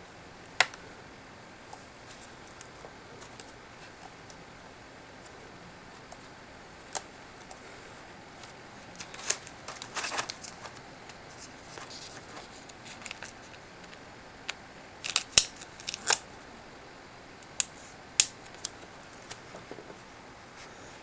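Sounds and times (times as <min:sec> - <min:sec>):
light plastic handling: 0:08.4 - 0:14.0.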